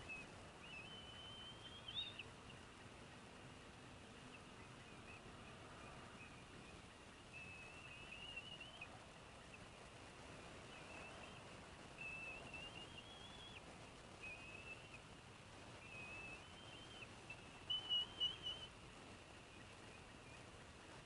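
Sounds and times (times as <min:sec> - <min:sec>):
eaglets high whistled calls: 0:00.0 - 0:02.6, 0:04.2 - 0:15.1, 0:15.7 - 0:18.8
low steady hiss: 0:00.0 - 0:21.0.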